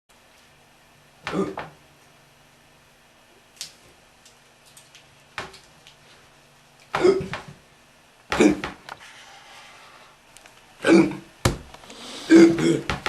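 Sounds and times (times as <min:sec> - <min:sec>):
boy hiccupping: 0:12.1 - 0:13.0.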